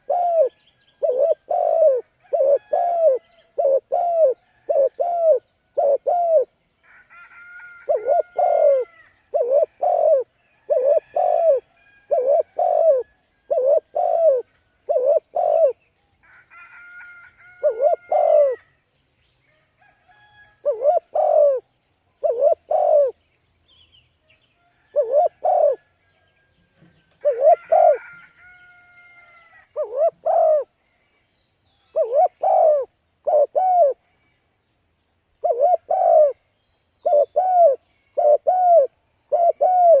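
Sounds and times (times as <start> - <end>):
dove cooing: 0.0 - 6.5, 7.2 - 15.8, 17.4 - 18.7, 20.6 - 21.6, 22.2 - 23.2, 24.9 - 25.9, 27.1 - 30.7, 31.9 - 34.0, 35.4 - 36.4, 37.0 - 40.0
bird chirping: 0.0 - 6.9, 20.6 - 28.0, 29.7 - 40.0.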